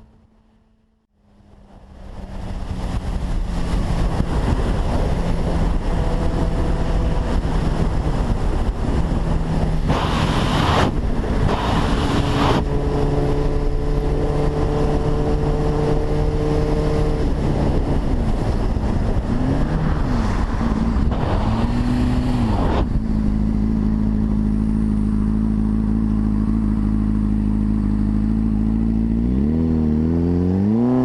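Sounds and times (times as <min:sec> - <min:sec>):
motorcycle engine running: 0:00.0 - 0:31.0
wind rush on microphone: 0:01.4 - 0:25.7.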